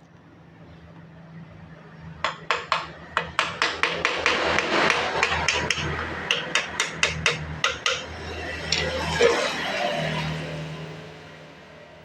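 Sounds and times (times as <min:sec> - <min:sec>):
hammer tapping on metal: 0:02.2 - 0:08.9.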